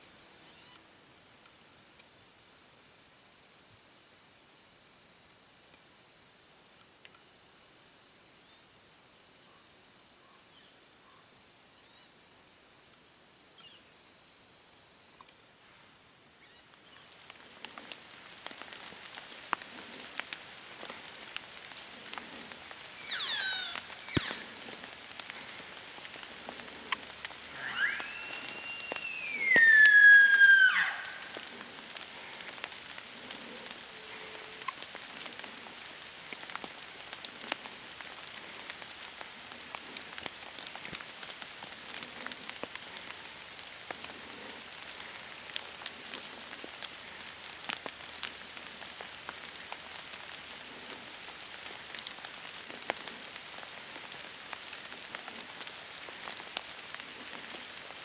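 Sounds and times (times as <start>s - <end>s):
rain pattering: 15.5s - 58.0s
long whistled animal call: 22.9s - 24.6s, 27.4s - 31.7s.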